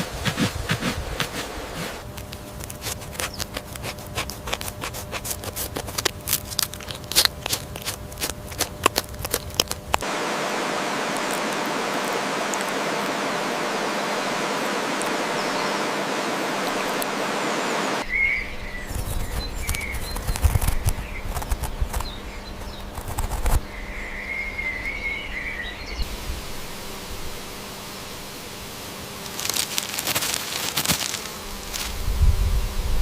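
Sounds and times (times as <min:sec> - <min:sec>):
small birds chirping: 0:02.2 - 0:04.8, 0:06.2 - 0:10.0, 0:13.8 - 0:26.1
steady hiss: 0:09.3 - 0:21.2, 0:23.6 - 0:33.0.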